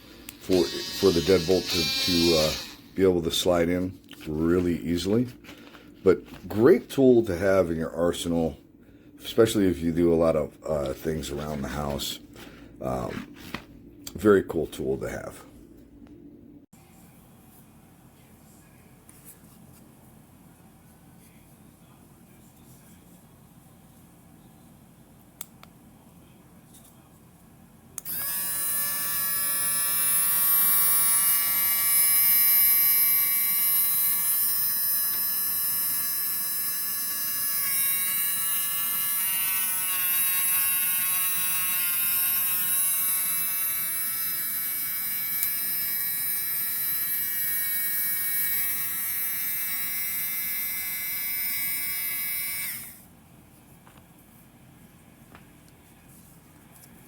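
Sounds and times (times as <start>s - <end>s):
rotary tool motor whine: 0.4s - 2.8s, 28.1s - 53.0s.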